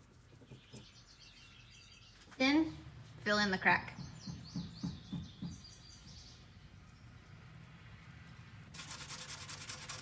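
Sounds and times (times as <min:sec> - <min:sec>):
sanding wood rubbing: 0:08.7 - 0:10.0.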